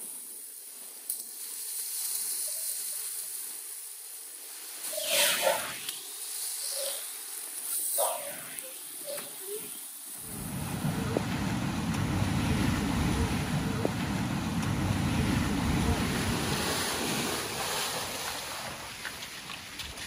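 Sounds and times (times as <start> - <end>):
wind buffeting microphone: 10.2 - 18.3
river rushing and rumbling: 10.2 - 20.0.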